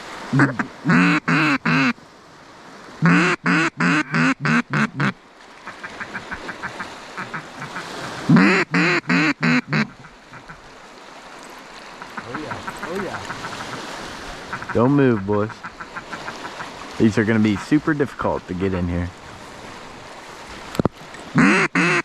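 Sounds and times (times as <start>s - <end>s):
duck quacking: 0.3s - 1.9s, 3.0s - 5.1s, 5.7s - 10.6s, 12.0s - 13.8s, 14.5s - 16.7s, 21.4s - 22.0s.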